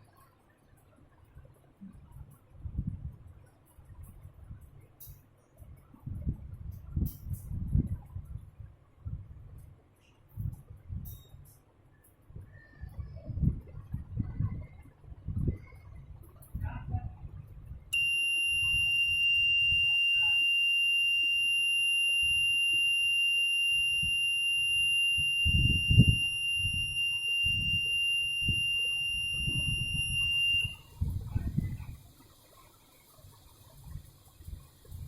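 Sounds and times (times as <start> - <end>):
door alarm buzzer tone: 18.0 - 30.8.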